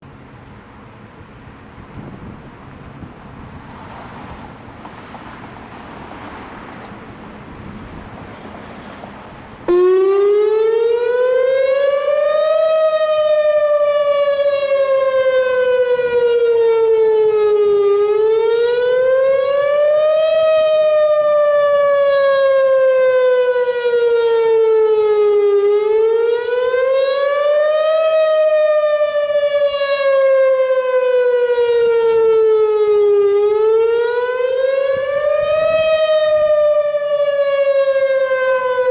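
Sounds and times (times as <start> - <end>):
wind noise on microphone: 1.0 - 9.8, 34.1 - 37.3
warning siren wailing: 7.9 - 38.9.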